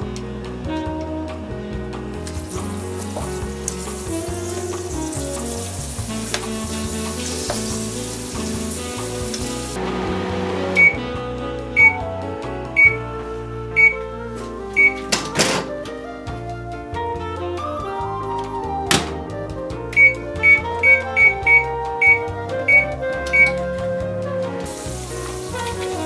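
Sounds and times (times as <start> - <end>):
background music: 0.0 - 26.0
hot oil sizzling: 2.2 - 11.1, 24.6 - 26.0
microwave oven beeps: 10.7 - 11.2, 11.8 - 12.1, 12.8 - 13.1, 13.8 - 14.0, 14.8 - 15.1, 20.0 - 23.6.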